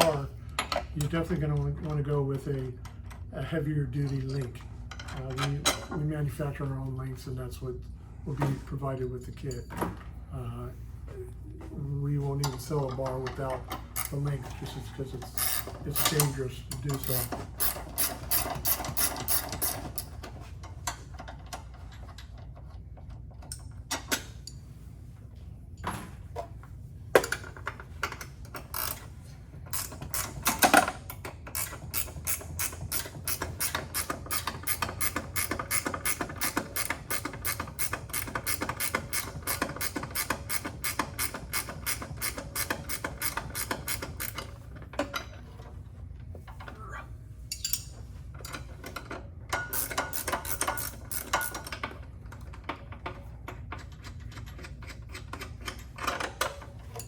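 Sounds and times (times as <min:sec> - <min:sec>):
ratchet wrench clicking: 0:15.4 - 0:16.3, 0:16.9 - 0:20.1, 0:28.6 - 0:29.0, 0:29.8 - 0:44.4, 0:49.7 - 0:51.8.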